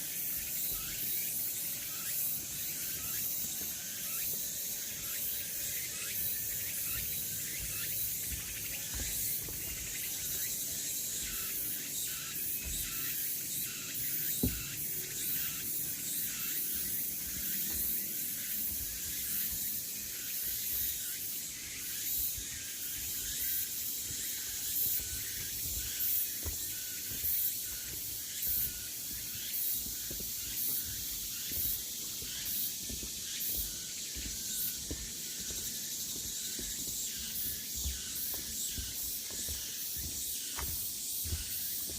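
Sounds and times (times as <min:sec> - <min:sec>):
cicadas buzzing: 0:00.0 - 0:41.9.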